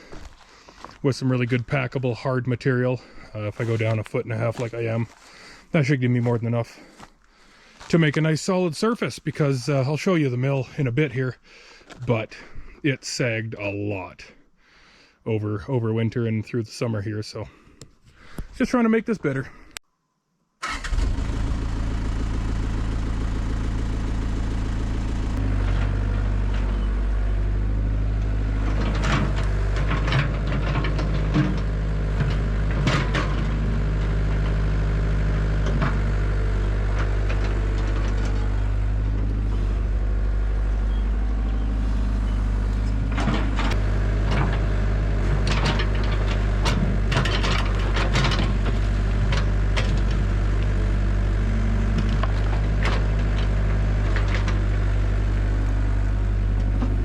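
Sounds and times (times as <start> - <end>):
diesel engine running: 0.0 - 8.7, 20.6 - 57.0
excavator bucket clanking and scraping: 25.4 - 57.0.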